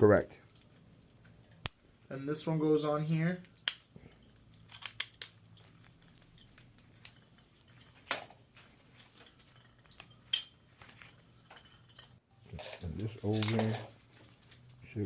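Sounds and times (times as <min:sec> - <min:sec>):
small metal parts clicking: 0:03.5 - 0:08.3, 0:09.2 - 0:13.9.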